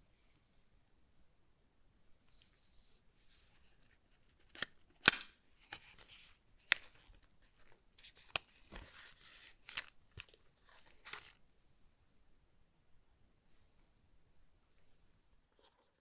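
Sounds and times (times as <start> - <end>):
crinkly packaging rustling: 5.6 - 11.4.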